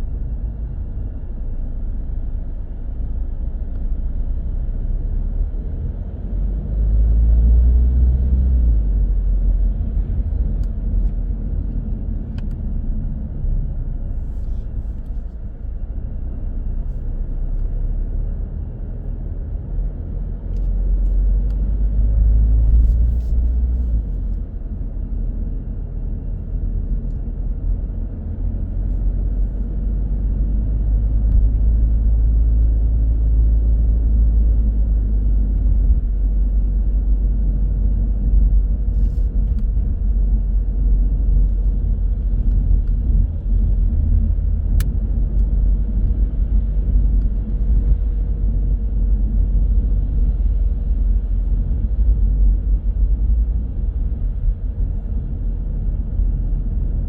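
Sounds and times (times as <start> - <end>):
car engine and road noise: 0.0 - 57.0.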